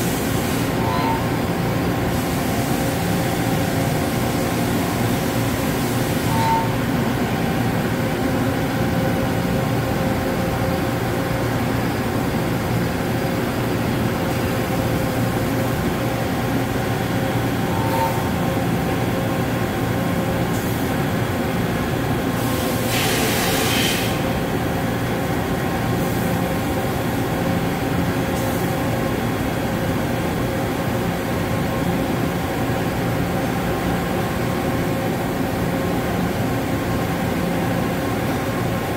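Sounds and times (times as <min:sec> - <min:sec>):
cnc machine running: 0:00.4 - 0:20.7.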